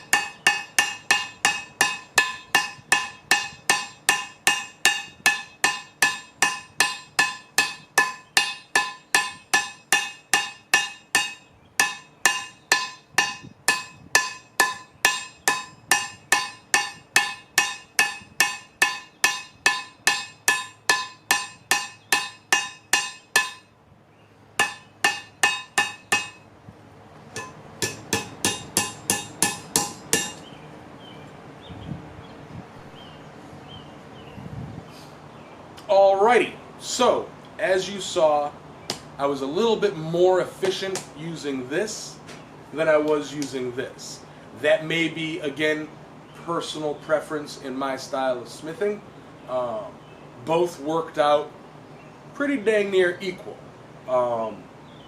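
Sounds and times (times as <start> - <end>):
hammer ringing on steel anvil: 0.0 - 23.7, 24.6 - 26.4, 27.4 - 30.4.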